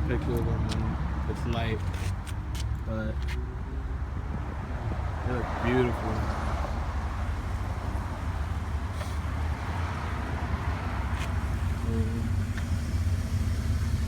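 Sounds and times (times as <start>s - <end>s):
car engine idling: 6.1s - 14.0s.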